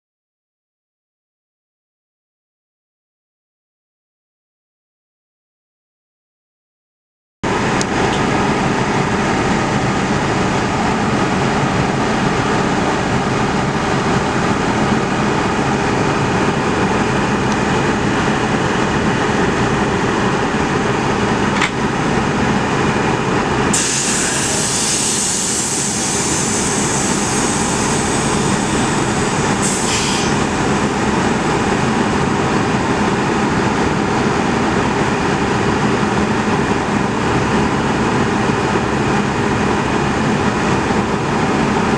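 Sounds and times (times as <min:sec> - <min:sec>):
train running: 0:07.5 - 0:41.9
loud high hiss: 0:23.7 - 0:31.5.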